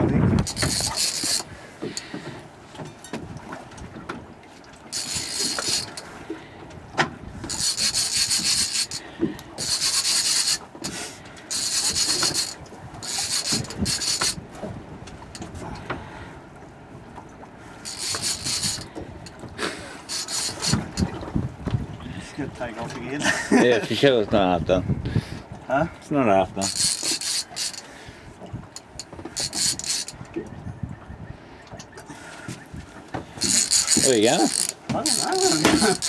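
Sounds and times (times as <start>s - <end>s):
fishing reel drag buzzing: 0.4s - 2.1s, 4.9s - 6.1s, 7.4s - 14.4s, 17.8s - 19.3s, 20.0s - 21.1s, 26.6s - 28.0s, 28.8s - 30.2s, 33.4s - 36.0s.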